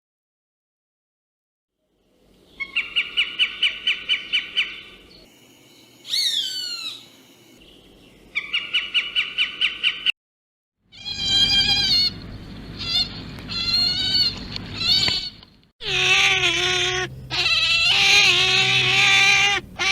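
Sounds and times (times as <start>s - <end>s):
rapid pulsed high animal calls: 6.0s - 7.6s, 10.9s - 15.2s, 15.8s - 19.9s
wavering animal cry: 10.9s - 12.2s, 12.8s - 19.9s.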